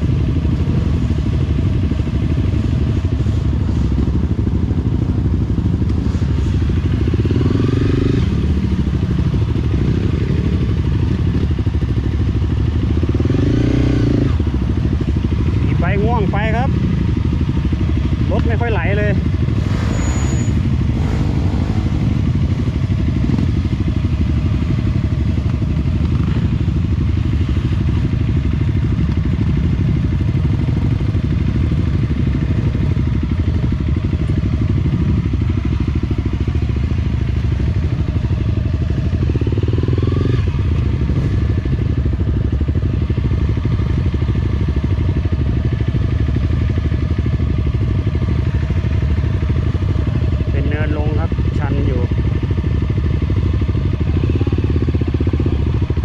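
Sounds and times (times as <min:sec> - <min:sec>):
motorcycle engine at low revs: 0:00.0 - 0:56.0.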